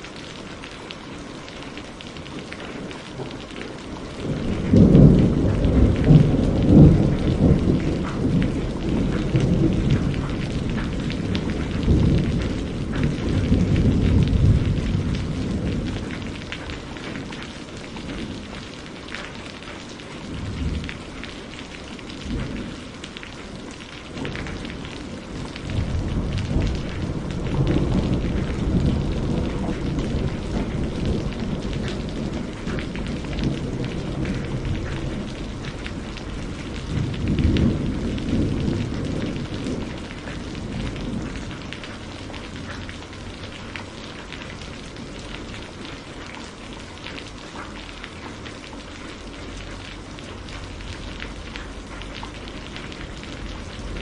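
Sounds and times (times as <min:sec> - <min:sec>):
rain pattering: 0:00.0 - 0:54.0
thunder rolling: 0:04.2 - 0:17.3, 0:24.1 - 0:43.8.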